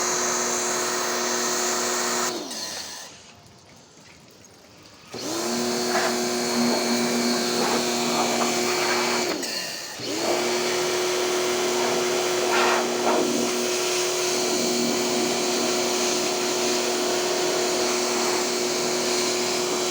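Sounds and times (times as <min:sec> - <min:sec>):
cleaning machine motor whine: 0:05.2 - 0:19.9
rushing hiss: 0:11.8 - 0:13.5.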